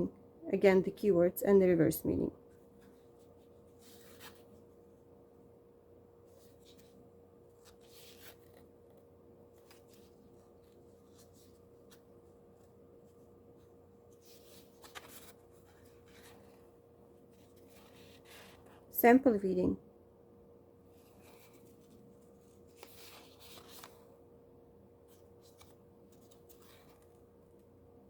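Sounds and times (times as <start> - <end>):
faint steady hum: 0.0 - 28.0
paper pages rustling: 2.6 - 4.8, 6.2 - 18.9, 20.9 - 24.2, 25.0 - 27.8.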